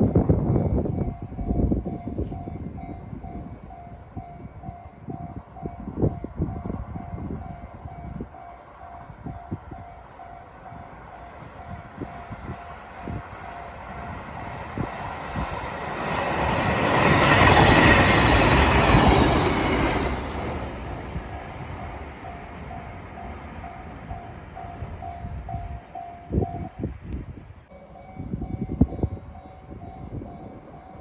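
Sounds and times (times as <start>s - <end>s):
crossing warning bell ringing: 0.1s - 27.0s, 27.7s - 31.0s
train wheels rushing: 11.4s - 25.8s.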